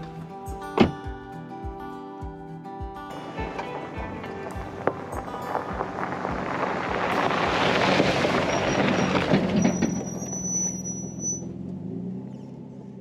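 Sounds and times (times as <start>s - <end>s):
held low chord: 0.0s - 7.8s.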